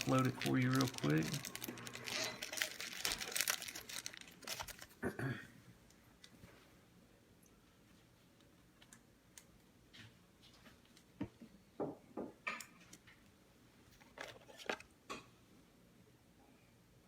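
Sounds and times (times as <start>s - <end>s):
plastic sleeve clicks and rustles: 0.0s - 5.0s, 14.0s - 14.9s.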